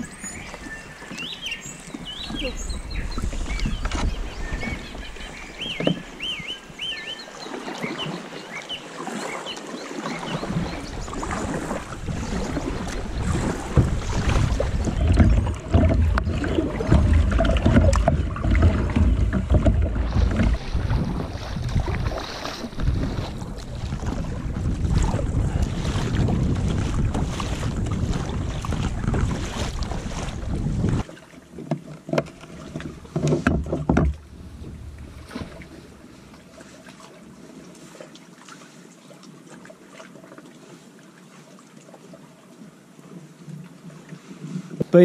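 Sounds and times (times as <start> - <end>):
wind buffeting microphone: 0.0 - 6.7, 10.3 - 31.1
birds chirping: 0.0 - 11.4
paddle splashes: 0.0 - 45.0
water sloshing against hull: 0.0 - 45.0.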